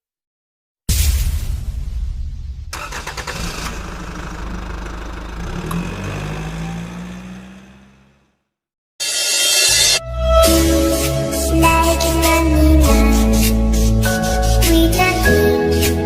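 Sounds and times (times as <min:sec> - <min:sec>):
bus engine running and revving: 0:02.8 - 0:08.5.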